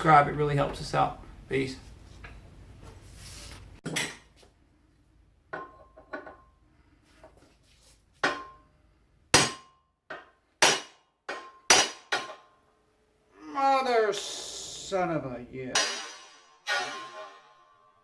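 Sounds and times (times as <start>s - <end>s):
hammer striking metal: 9.4s - 12.5s, 15.7s - 18.0s.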